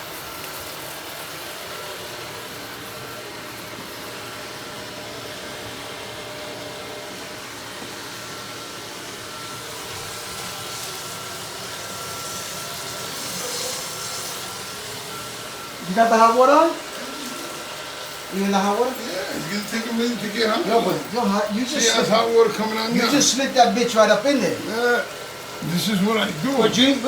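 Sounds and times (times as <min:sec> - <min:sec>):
water rushing from a tap: 0:09.3 - 0:27.0.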